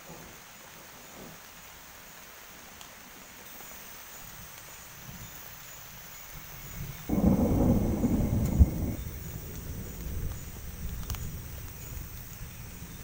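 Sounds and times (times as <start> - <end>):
thunder rumbling: 6.8 - 13.0
loud thunder peal: 7.1 - 10.7
sharp thunder crack: 7.1 - 10.9.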